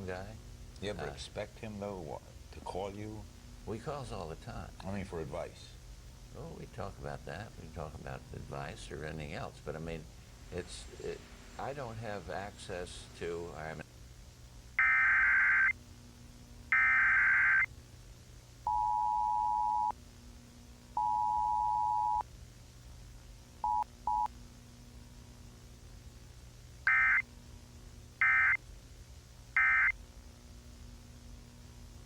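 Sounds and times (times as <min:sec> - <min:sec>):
faint low hum: 0:00.0 - 0:32.0
harsh digital data bursts: 0:16.7 - 0:17.7.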